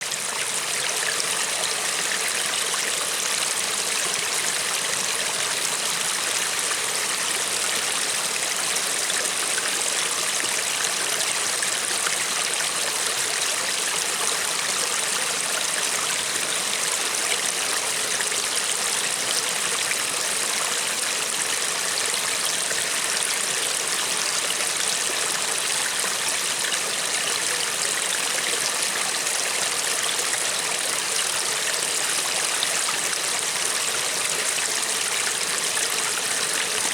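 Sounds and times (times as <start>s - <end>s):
river flowing: 11.2s - 36.9s.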